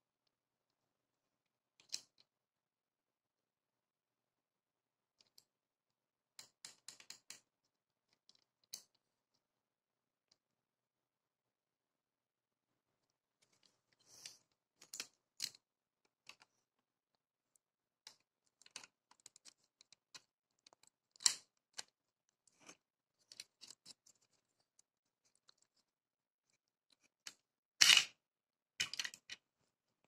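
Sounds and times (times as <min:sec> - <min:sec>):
plastic pieces clicking: 0:18.0 - 0:25.8, 0:26.9 - 0:28.2, 0:28.8 - 0:29.4.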